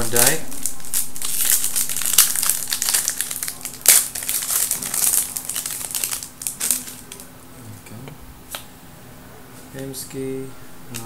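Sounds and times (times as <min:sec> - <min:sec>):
wrapper tearing and crinkling: 0:00.0 - 0:07.3.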